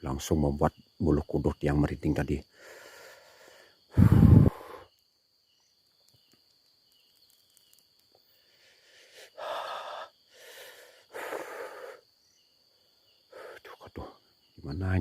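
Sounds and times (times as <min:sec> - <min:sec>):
person breathing heavily: 0:02.5 - 0:04.9, 0:08.4 - 0:12.1.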